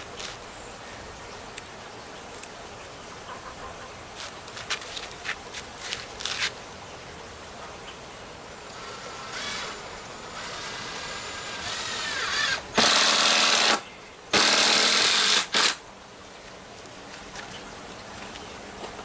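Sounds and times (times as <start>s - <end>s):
power drill running: 8.7s - 13.8s, 14.4s - 15.8s.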